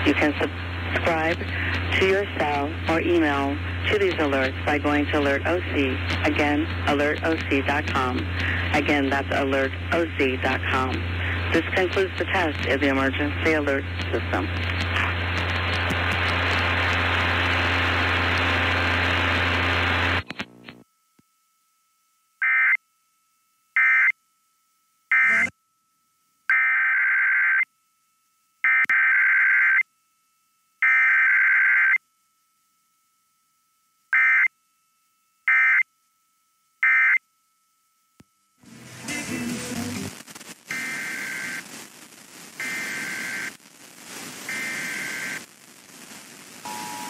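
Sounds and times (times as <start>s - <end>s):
loud hiss with low hum: 0.0s - 20.8s, 38.6s - 47.0s
buzzy two-tone data tones: 25.1s - 25.5s, 40.7s - 41.7s, 42.5s - 43.6s, 44.3s - 47.0s.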